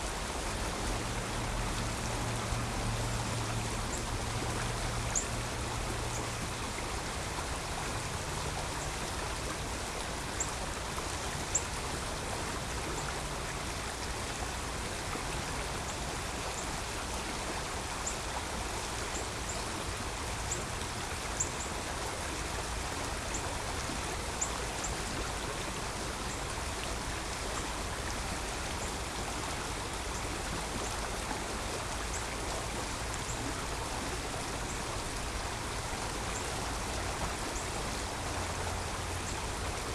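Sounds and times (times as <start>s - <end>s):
creek water rushing: 0.0s - 39.9s.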